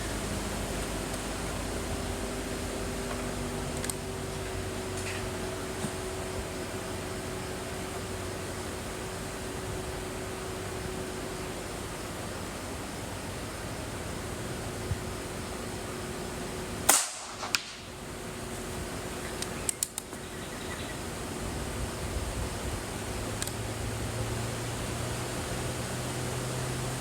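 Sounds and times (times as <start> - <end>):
air pistol shot crack: 16.8 - 17.9
light clicks: 19.3 - 20.2.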